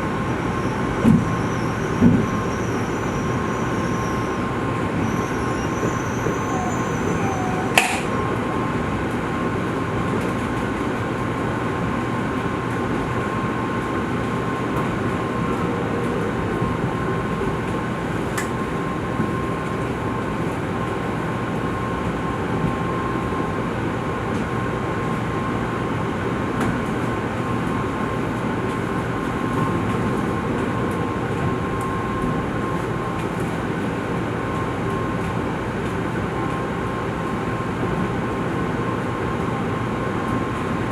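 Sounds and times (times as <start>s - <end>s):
train wheels rumbling: 0.0s - 9.2s
steady high tone: 5.0s - 8.2s.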